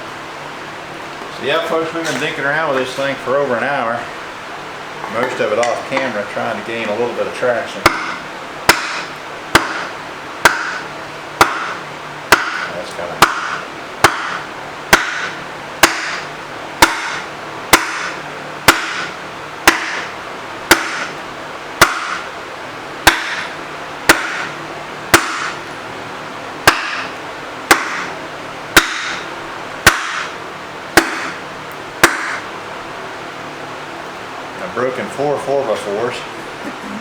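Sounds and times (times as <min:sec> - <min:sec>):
sledgehammer on metal: 0:07.8 - 0:20.1, 0:20.7 - 0:21.2, 0:21.8 - 0:22.3, 0:23.0 - 0:25.6, 0:26.6 - 0:28.2, 0:28.8 - 0:30.4, 0:31.0 - 0:31.4, 0:32.0 - 0:32.5.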